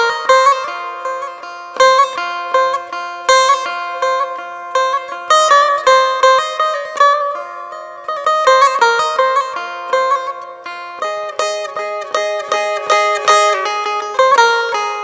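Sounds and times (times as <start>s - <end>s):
plucked string instrument melody: 0.0s - 15.0s.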